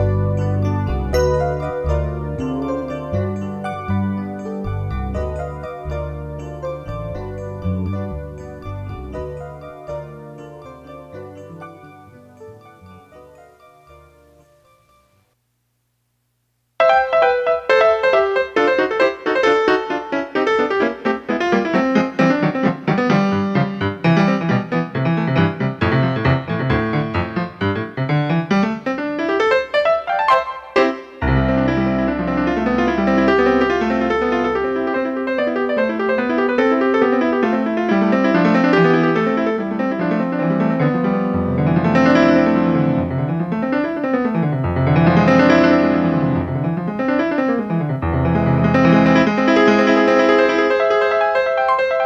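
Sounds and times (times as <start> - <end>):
keyboard music with bass line: 0.0 - 11.4, 19.6 - 50.4
sampled piano notes: 0.0 - 14.8, 16.8 - 52.0
deep held bass note: 1.2 - 5.1.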